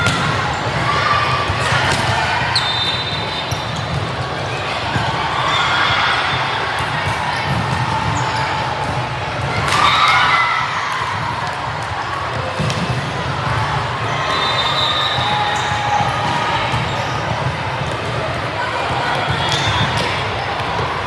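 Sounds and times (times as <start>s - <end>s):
spectators chatter: 0.0s - 21.0s
volleyball hits: 0.0s - 21.0s
sneaker squeaks on gym floor: 1.6s - 4.2s, 14.1s - 18.2s, 19.2s - 20.8s.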